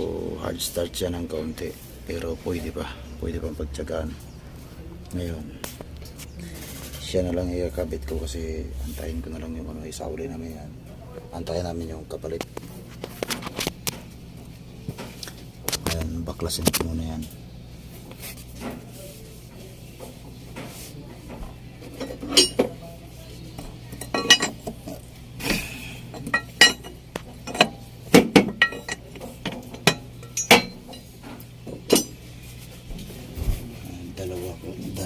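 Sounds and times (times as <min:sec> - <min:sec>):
faint steady hum: 0:00.0 - 0:35.0
metal tools clinking: 0:21.9 - 0:22.8, 0:23.9 - 0:25.0, 0:26.1 - 0:32.2.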